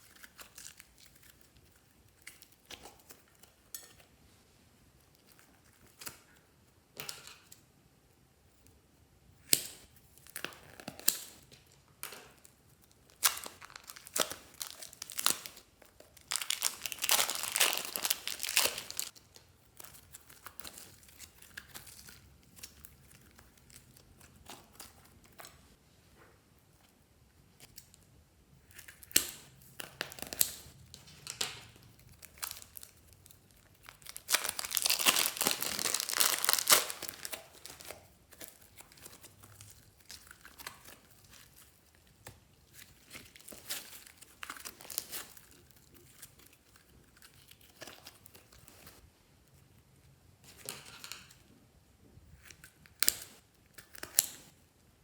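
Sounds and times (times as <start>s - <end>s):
plastic bags crinkling: 13.1s - 19.4s, 30.1s - 42.0s, 42.7s - 45.9s.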